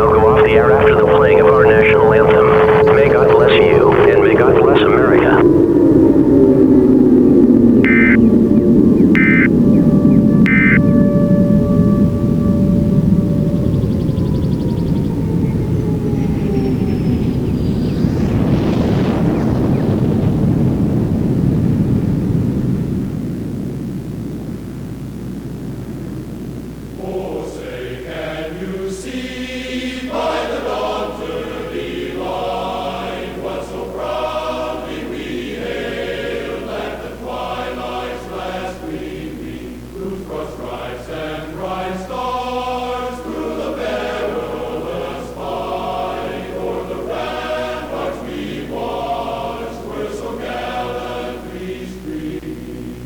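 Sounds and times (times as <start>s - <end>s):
low drone: 0.0s - 27.2s
choir singing: 27.0s - 52.9s.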